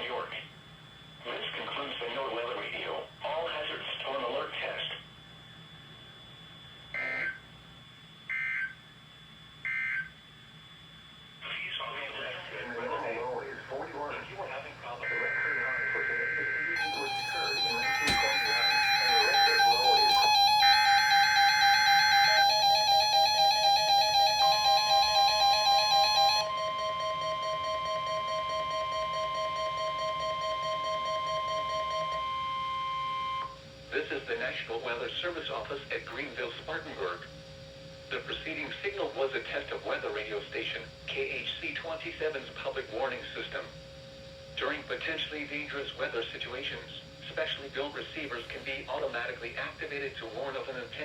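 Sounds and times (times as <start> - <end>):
faint radio static: 0.0 - 7.4, 11.4 - 24.9, 33.9 - 37.4, 38.1 - 43.7, 44.6 - 51.0
steady high alarm tone: 0.0 - 51.0
two-tone digital data warble: 6.8 - 7.5, 13.6 - 34.2.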